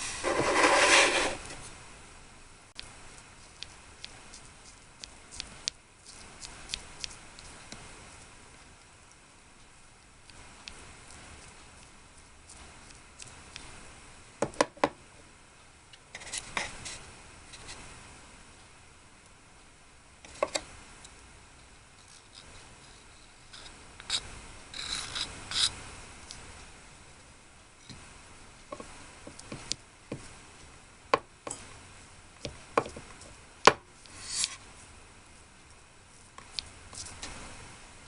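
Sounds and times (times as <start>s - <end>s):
small tool scrapes: 0.0s - 1.6s, 22.0s - 25.8s, 34.0s - 34.6s.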